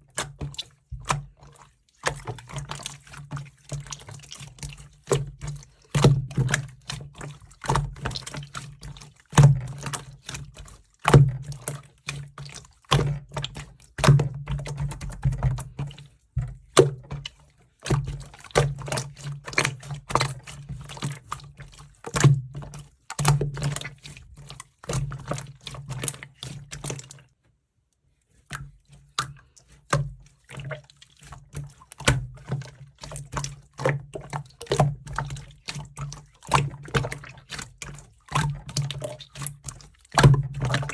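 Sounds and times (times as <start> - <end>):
slime squishing: 0.0 - 27.3, 28.4 - 40.9.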